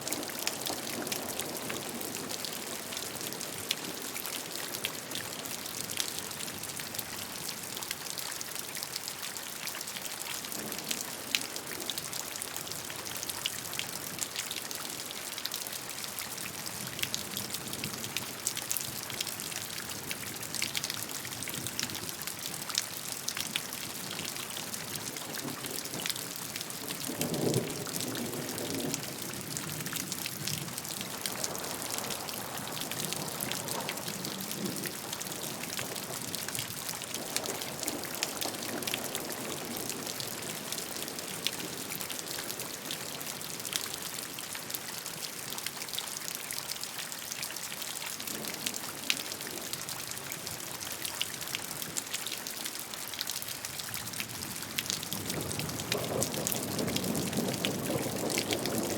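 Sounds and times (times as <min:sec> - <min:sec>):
raindrops ticking on a surface: 0:00.0 - 0:58.9
steady rain falling: 0:00.0 - 0:58.9.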